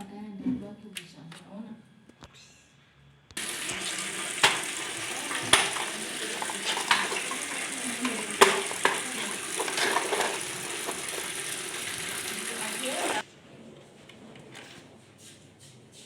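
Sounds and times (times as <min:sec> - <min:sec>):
washing machine clicks and knocks: 0:03.4 - 0:12.8
water hissing and splashing: 0:03.4 - 0:13.2.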